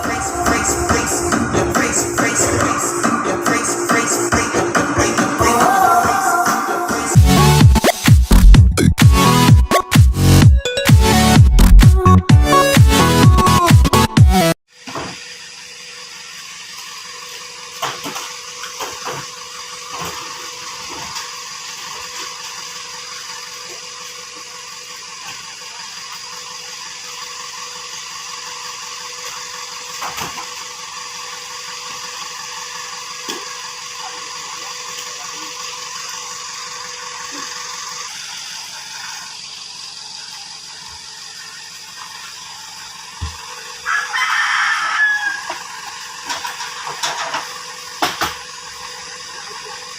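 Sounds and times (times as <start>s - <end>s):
steady hum: 0.0s - 13.9s
rooster crowing: 43.8s - 45.8s.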